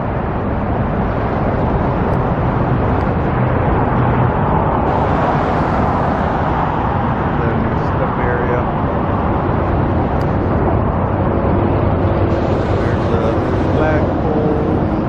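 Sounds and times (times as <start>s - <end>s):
road traffic rumble: 0.0s - 15.0s.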